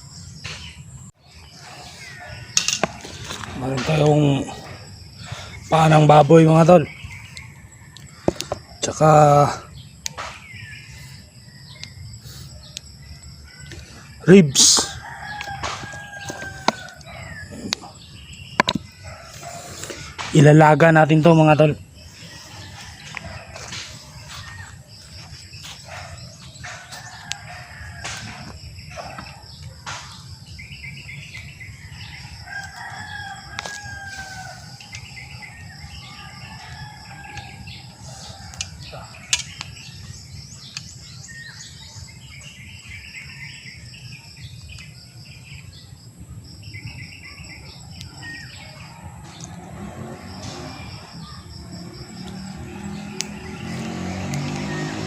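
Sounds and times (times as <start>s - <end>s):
small birds chirping: 0.0s - 55.0s
rooster crowing: 1.5s - 6.0s, 12.6s - 18.3s, 18.9s - 20.3s, 22.0s - 29.6s, 31.6s - 40.6s, 47.6s - 55.0s
sharp clicks and knocks: 18.6s - 18.9s.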